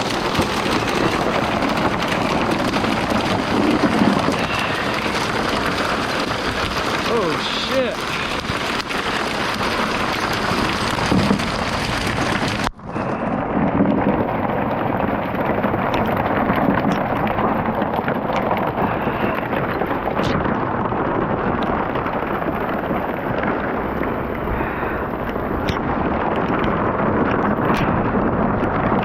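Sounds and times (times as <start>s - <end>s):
heavy rain pouring: 0.0s - 29.0s.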